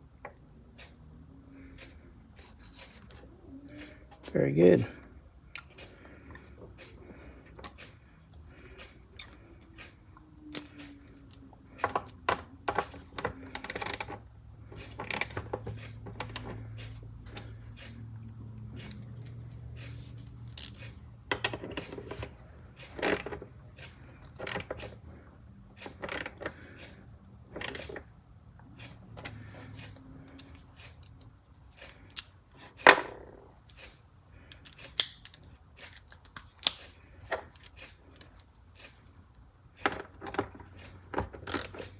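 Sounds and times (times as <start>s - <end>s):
ratchet screwdriver clicking: 10.5s - 11.4s, 13.2s - 14.2s, 15.0s - 15.4s, 20.5s - 21.0s, 23.0s - 23.4s, 24.3s - 24.7s, 26.0s - 26.5s, 27.6s - 28.0s, 34.6s - 35.4s, 41.4s - 41.9s.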